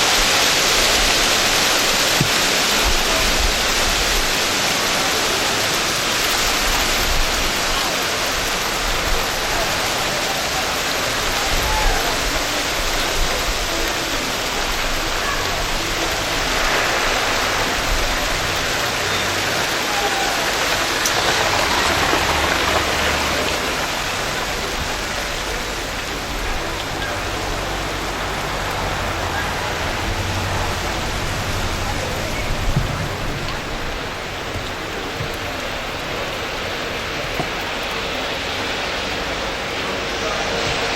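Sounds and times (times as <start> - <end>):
hail striking the ground: 0.0 - 40.9.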